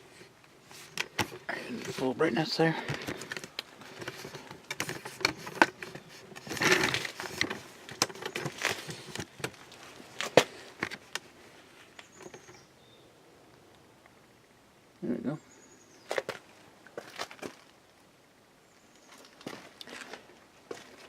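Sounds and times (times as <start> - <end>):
rustling: 0.0 - 12.7, 16.0 - 17.8.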